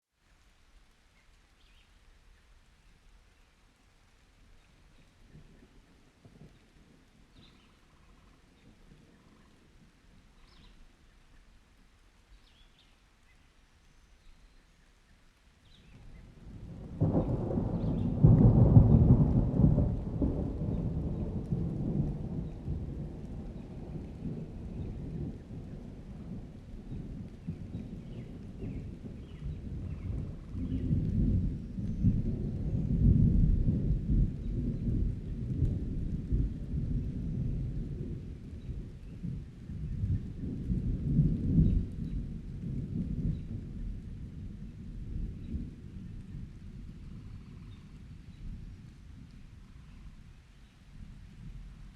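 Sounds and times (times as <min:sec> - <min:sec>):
steady rain: 0:00.0 - 0:51.9
thunder rumbling: 0:15.8 - 0:51.9.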